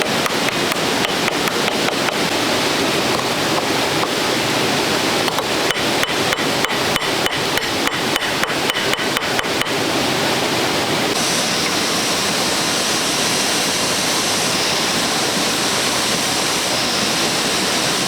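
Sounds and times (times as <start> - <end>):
rapid knocks of tool striking: 0.0 - 2.4, 5.3 - 9.8
stream rushing: 0.0 - 18.0.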